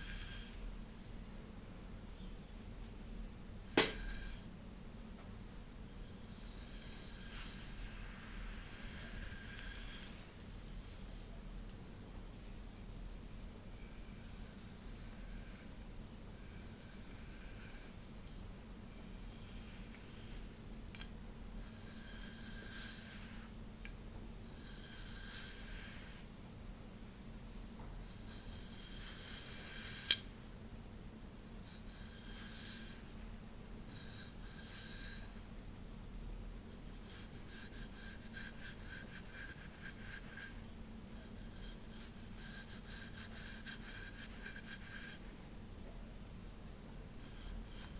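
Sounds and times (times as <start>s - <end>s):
sharp click: 3.8s - 4.1s.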